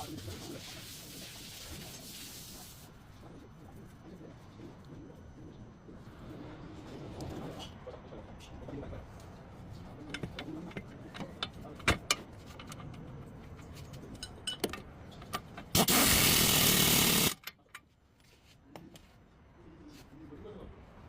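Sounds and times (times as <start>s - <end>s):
metal tools clicking and knocking: 14.0s - 15.7s.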